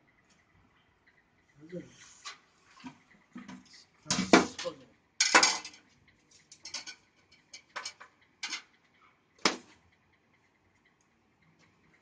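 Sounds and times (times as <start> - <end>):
hard objects clicking and clacking: 3.4 - 8.7.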